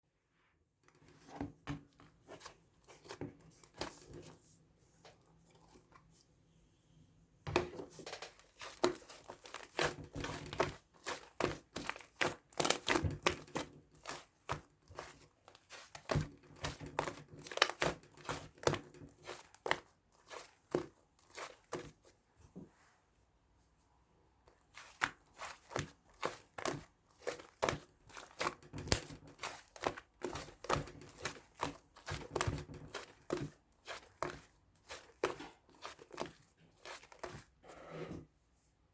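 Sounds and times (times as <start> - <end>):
crinkling and tearing handling: 7.9 - 21.9, 24.5 - 37.5.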